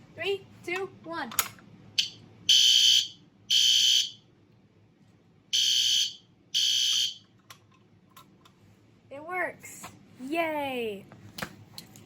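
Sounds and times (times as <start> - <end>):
fire alarm high-pitched blasts: 2.0 - 4.2, 5.5 - 7.2.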